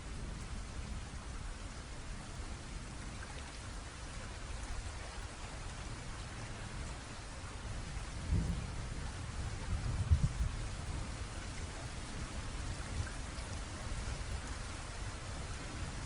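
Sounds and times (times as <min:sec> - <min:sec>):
low rumble of thunder: 0:00.0 - 0:16.0
steady rain falling: 0:00.0 - 0:16.0.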